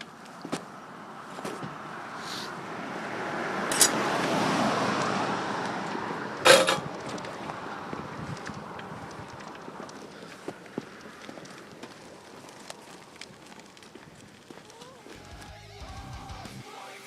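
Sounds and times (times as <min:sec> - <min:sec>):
wheels rolling over pavement: 0:00.0 - 0:16.0.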